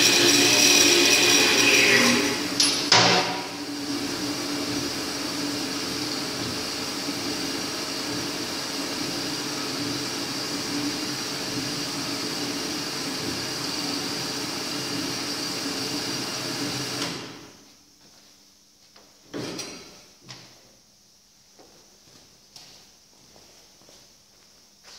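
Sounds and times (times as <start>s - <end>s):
metal-cutting bandsaw whining: 0.0s - 3.6s.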